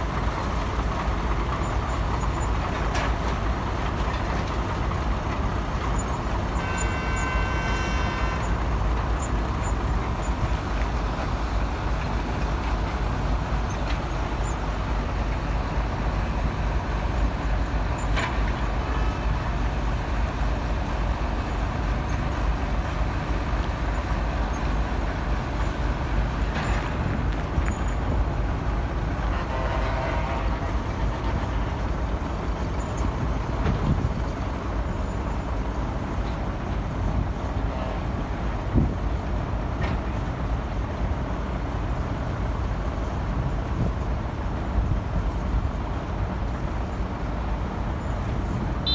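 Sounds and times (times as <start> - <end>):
heavy engine rumbling: 0.0 - 48.9
short horn-like tone: 6.6 - 8.6.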